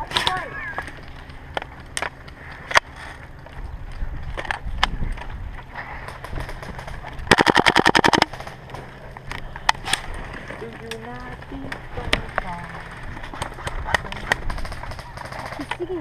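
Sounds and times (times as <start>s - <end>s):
airsoft rifle full-auto burst: 6.4s - 8.6s.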